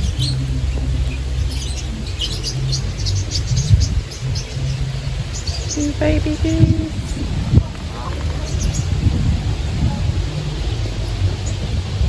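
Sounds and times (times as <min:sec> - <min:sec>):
small birds chirping: 0:00.0 - 0:12.0
steady low rumble: 0:00.0 - 0:12.0.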